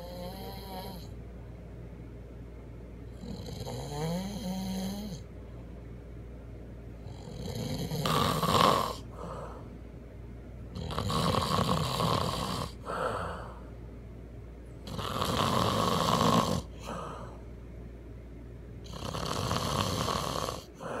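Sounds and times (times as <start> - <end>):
man snoring loudly: 0.0 - 1.1, 3.2 - 5.2, 7.0 - 9.3, 10.8 - 13.2, 14.8 - 17.0, 18.8 - 21.0
soft breath sound: 9.0 - 9.9, 12.6 - 13.9, 16.6 - 17.6, 20.6 - 21.0.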